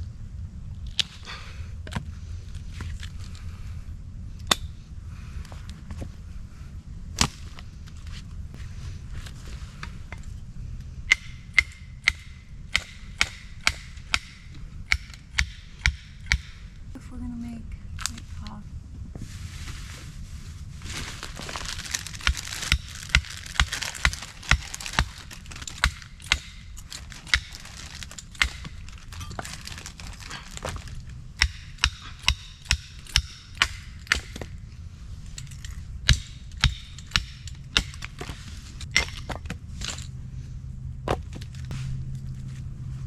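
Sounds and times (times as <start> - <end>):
hatchet chopping wood: 11.1 - 16.6, 22.1 - 29.5, 31.4 - 34.6, 36.0 - 38.3.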